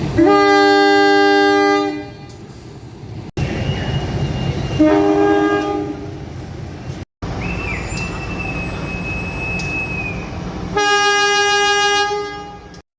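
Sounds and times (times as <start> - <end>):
train rumbling: 0.0 - 12.8
locomotive air horn chord: 0.1 - 2.4, 4.7 - 6.1, 10.7 - 12.8.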